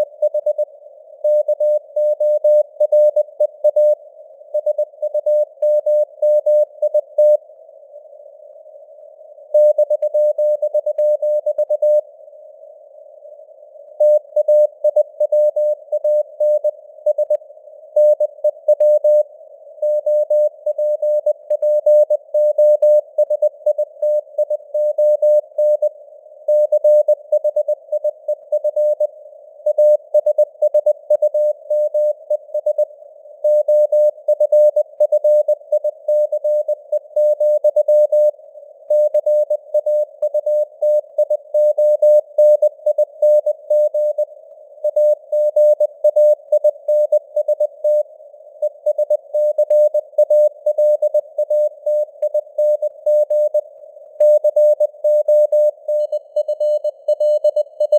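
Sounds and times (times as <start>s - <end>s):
morse code tone: 54.2s - 57.9s.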